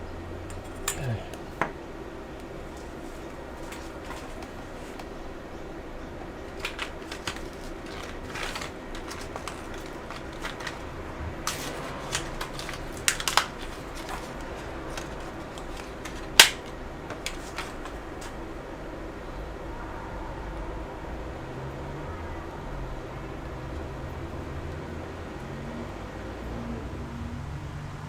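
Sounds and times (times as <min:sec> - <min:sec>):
laptop parts clicking and tapping: 0:06.5 - 0:10.9, 0:11.5 - 0:18.4.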